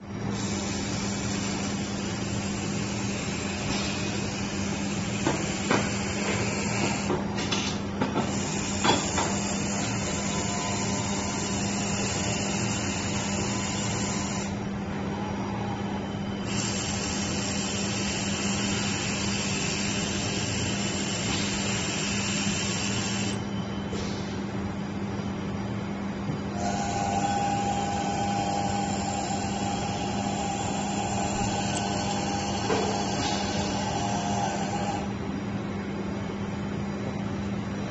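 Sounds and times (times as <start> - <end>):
welding arc hissing and crackling: 16.5 - 23.4.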